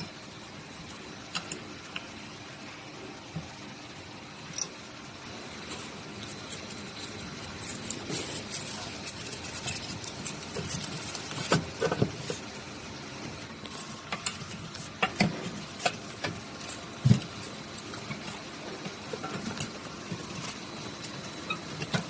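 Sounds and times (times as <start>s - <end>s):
parts clicking and knocking: 6.1s - 12.5s, 13.6s - 22.0s.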